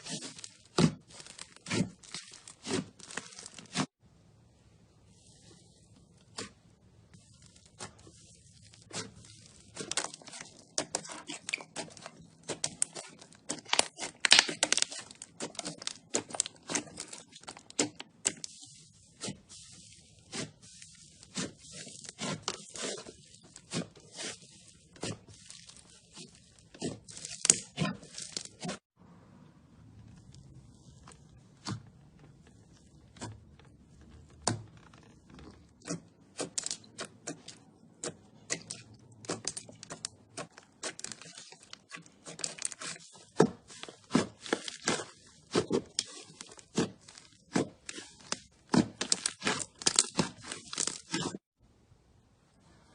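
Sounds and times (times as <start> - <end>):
slime crackling and popping: 8.6 - 18.6, 35.8 - 51.4.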